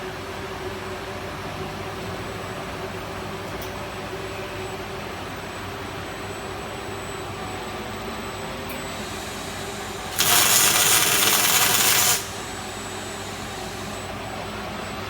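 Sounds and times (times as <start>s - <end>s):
steady machine hum: 0.0s - 15.0s
welding arc hissing: 9.0s - 14.1s.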